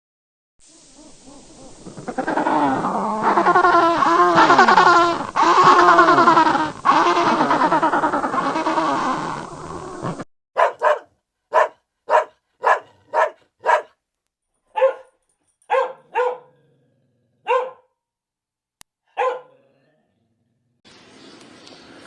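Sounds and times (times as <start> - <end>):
animal barking: 10.6 - 13.9, 14.8 - 15.1, 15.7 - 17.9, 19.1 - 19.9.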